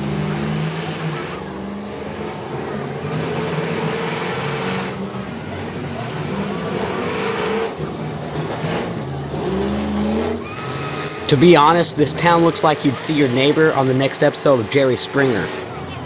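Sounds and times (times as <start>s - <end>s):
bus engines revving: 0.0s - 16.0s.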